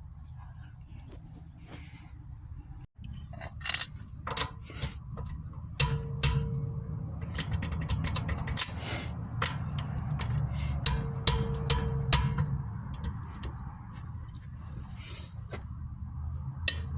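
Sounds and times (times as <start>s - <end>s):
metal tools clinking: 3.0s - 13.6s.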